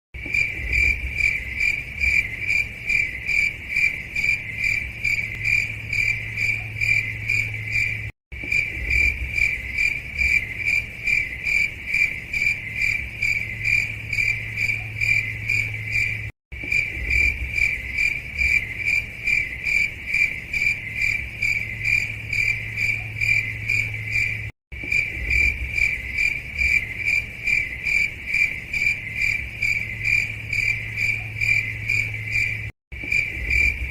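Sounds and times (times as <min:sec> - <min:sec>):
cricket chirping: 0:00.2 - 0:33.9.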